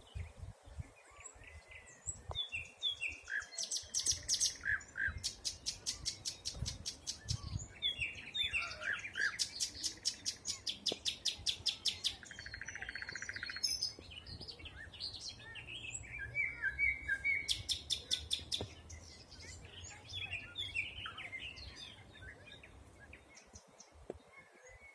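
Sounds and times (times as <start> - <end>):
bird trill: 3.6 - 14.0.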